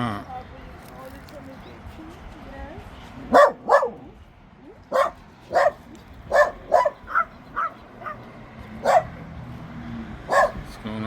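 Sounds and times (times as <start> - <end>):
dog barking: 3.3 - 4.1, 4.9 - 9.2, 10.3 - 10.6.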